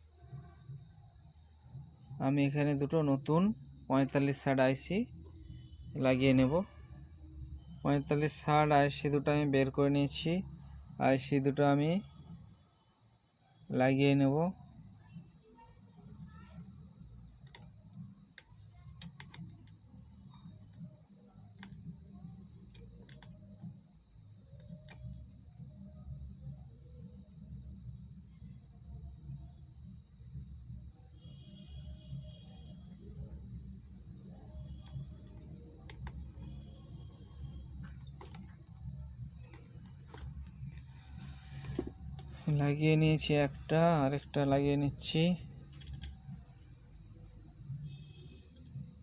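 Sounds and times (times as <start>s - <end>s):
crickets chirring: 0.0s - 49.0s
high-pitched hiss: 0.0s - 49.0s
small parts and tools clicking: 17.4s - 23.7s, 24.5s - 25.2s, 34.6s - 42.3s, 45.7s - 46.4s
faint small clicks: 45.7s - 46.2s.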